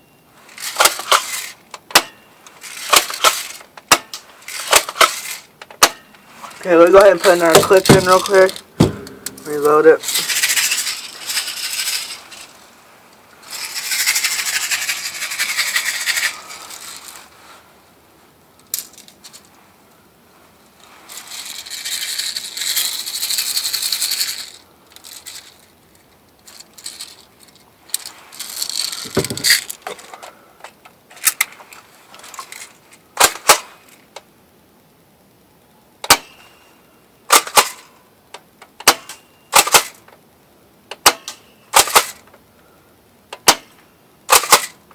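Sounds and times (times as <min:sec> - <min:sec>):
shells and bbs rattling: 0:00.5 - 0:12.6, 0:13.4 - 0:17.3, 0:21.0 - 0:34.0, 0:37.3 - 0:37.9, 0:38.8 - 0:40.0, 0:41.0 - 0:42.3, 0:43.4 - 0:44.8
airsoft shotgun shots: 0:07.5 - 0:09.6.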